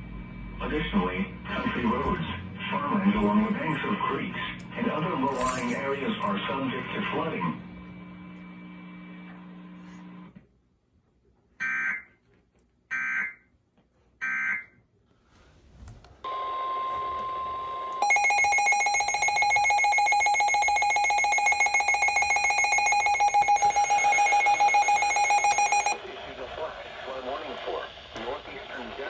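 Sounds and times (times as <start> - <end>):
loud multi-pitch alert tone: 17.6 - 26.0
screeching data tones: 18.0 - 26.0.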